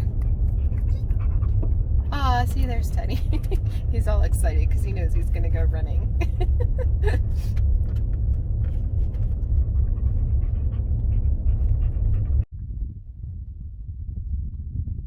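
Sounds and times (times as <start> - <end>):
dog panting: 0.0 - 8.0, 8.7 - 12.5
vehicle rumble: 0.0 - 15.0.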